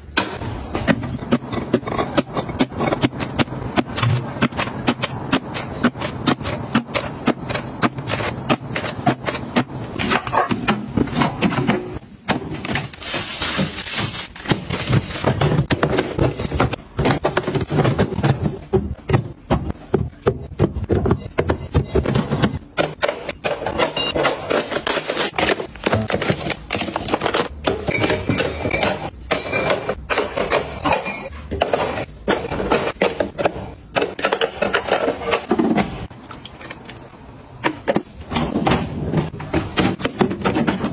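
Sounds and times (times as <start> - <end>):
packaging rustling: 12.6 - 15.3
plastic containers clicking and knocking: 37.6 - 40.9.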